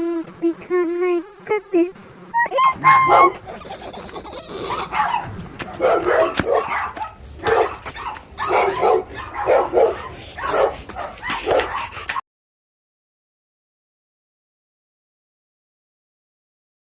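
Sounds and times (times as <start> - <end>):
dog barking: 2.8 - 3.4, 4.6 - 12.2.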